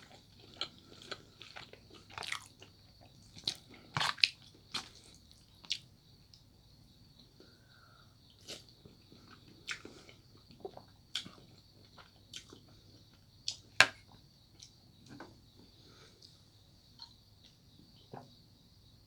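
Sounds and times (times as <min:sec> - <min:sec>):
crunchy snack being chewed: 0:00.0 - 0:05.9, 0:08.3 - 0:12.8.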